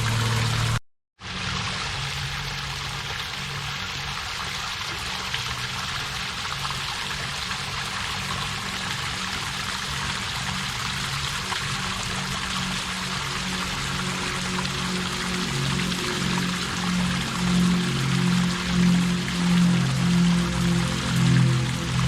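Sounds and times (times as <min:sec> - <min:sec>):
waterfall rushing: 0:00.0 - 0:00.8, 0:07.6 - 0:22.0.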